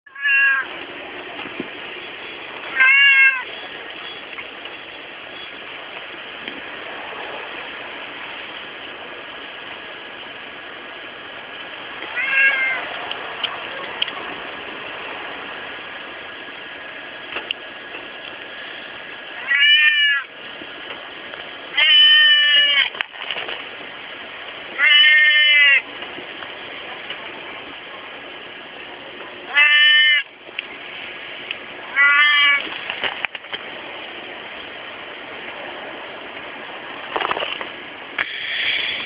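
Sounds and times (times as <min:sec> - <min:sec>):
cat meowing: 0:00.1 - 0:00.7, 0:02.7 - 0:03.5, 0:12.1 - 0:12.9, 0:19.4 - 0:20.3, 0:21.7 - 0:22.9, 0:24.8 - 0:25.8, 0:29.5 - 0:30.3, 0:31.9 - 0:32.7.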